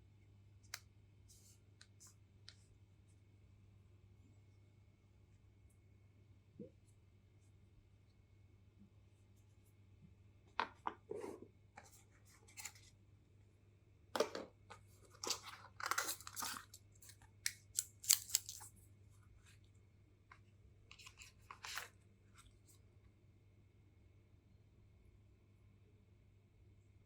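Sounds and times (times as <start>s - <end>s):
packaging clicks: 17.5s - 18.7s.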